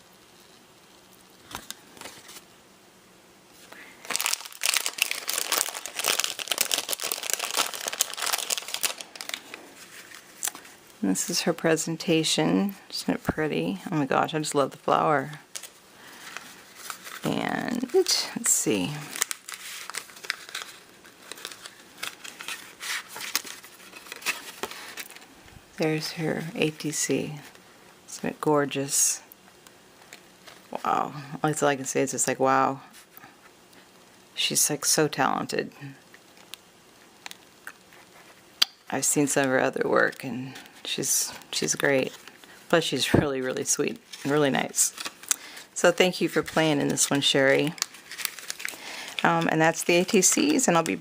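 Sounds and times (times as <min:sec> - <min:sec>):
packaging crinkling: 0:03.8 - 0:10.8, 0:15.4 - 0:25.5, 0:43.6 - 0:51.0.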